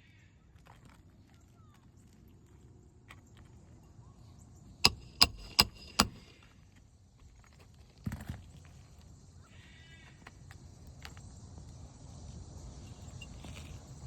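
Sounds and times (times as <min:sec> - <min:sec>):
hammer striking metal tool: 0:04.9 - 0:06.3.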